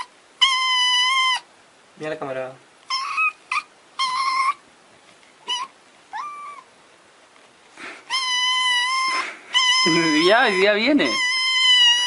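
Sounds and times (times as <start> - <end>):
cat meowing: 5.4 - 6.7, 8.0 - 12.0.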